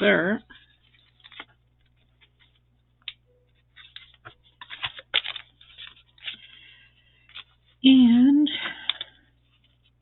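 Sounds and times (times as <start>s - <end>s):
paper rustling: 0.6s - 2.7s, 3.5s - 7.8s.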